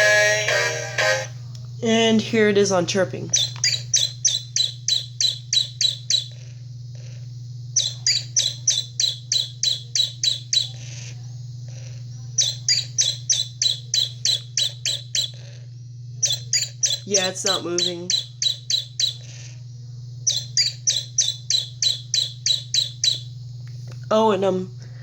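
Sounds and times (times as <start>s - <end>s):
toy bird chirping: 0.0s - 1.3s, 3.2s - 6.4s, 7.8s - 11.1s, 12.4s - 15.6s, 16.2s - 19.6s, 20.2s - 23.4s
steady low hum: 0.0s - 25.0s.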